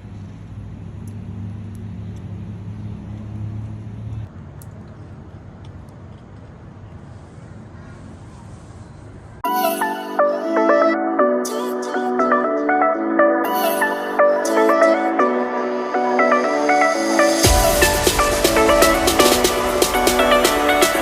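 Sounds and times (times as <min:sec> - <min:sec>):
outdoor background noise: 0:00.0 - 0:09.4
vehicle engine humming: 0:00.0 - 0:09.4, 0:17.4 - 0:21.0
music: 0:09.4 - 0:21.0.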